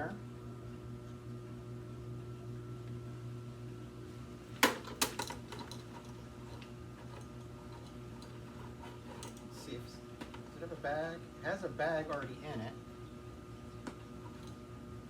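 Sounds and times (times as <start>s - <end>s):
vacuum cleaner clicks and rattles: 4.6s - 6.1s.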